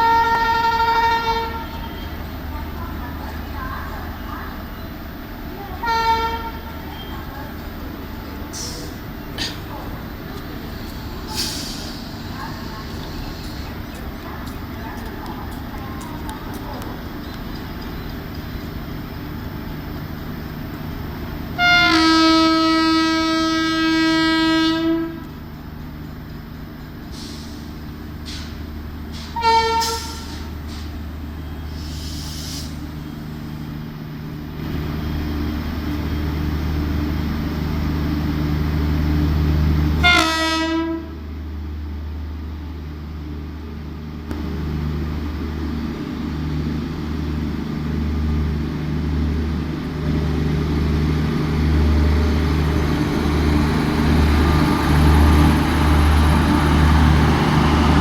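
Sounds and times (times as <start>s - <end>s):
locomotive horn blasts: 0.0s - 1.8s, 5.8s - 6.7s, 21.6s - 25.3s, 29.4s - 30.4s, 40.0s - 41.3s
train rumbling: 0.0s - 58.0s.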